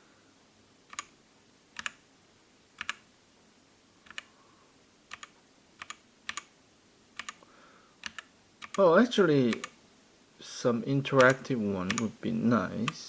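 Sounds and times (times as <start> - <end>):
keyboard key clicks: 8.0 - 8.8, 11.2 - 12.1.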